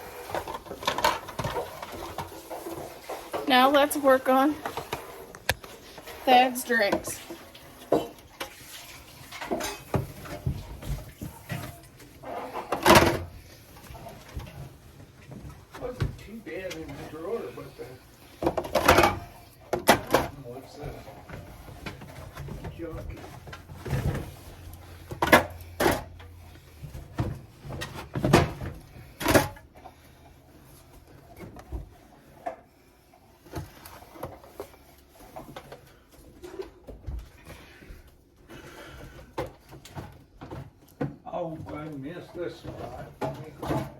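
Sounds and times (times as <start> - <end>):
refrigerator drawer knocks and clatters: 27.0 - 29.6.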